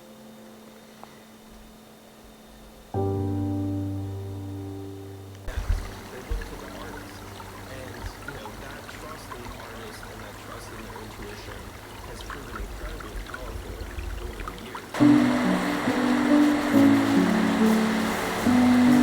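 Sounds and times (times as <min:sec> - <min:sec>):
creek water running under ice: 0:05.5 - 0:19.0
small water splashes: 0:05.5 - 0:19.0.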